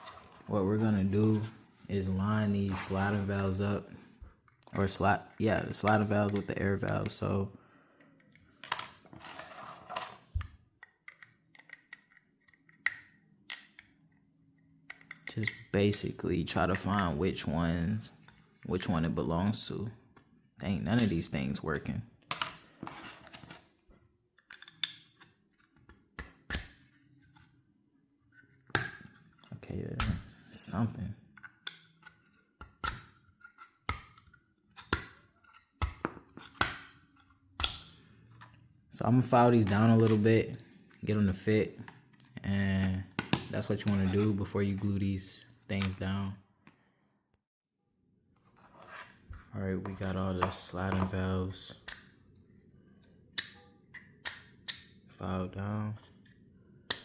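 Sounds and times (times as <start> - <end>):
plastic parts clicking and tapping: 10.3 - 14.0, 14.8 - 15.7, 24.4 - 26.7.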